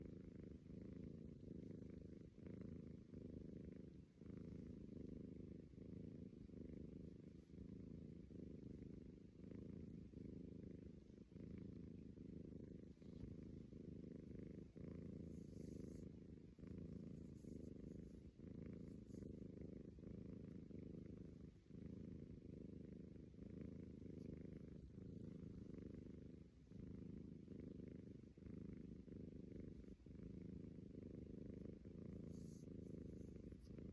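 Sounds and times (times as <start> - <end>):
cat snoring: 11.9 - 19.8, 29.2 - 33.9.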